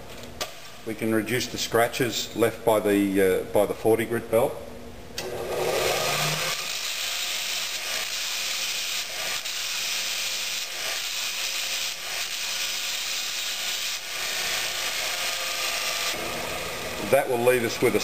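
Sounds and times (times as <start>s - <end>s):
belt grinder rasping on steel: 5.7s - 16.2s.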